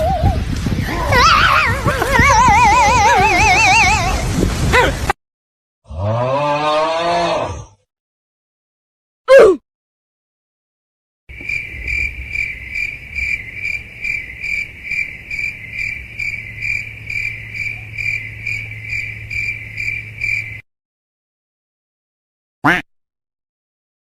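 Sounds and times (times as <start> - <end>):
crickets chirping: 11.3 - 20.6.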